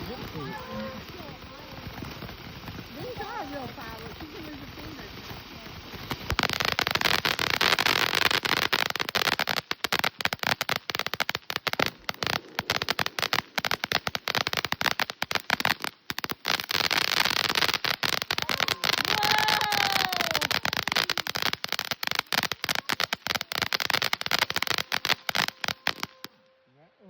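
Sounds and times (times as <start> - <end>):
fireworks crackling: 0.0 - 26.5.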